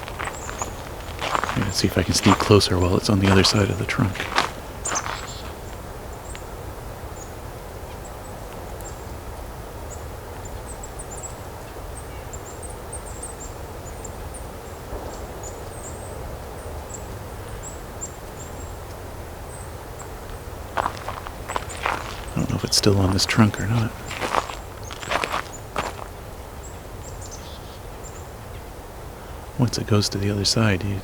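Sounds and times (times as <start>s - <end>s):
high-pitched songbird calls: 0.0s - 2.4s, 4.8s - 5.5s
steady low rumble: 0.0s - 5.3s.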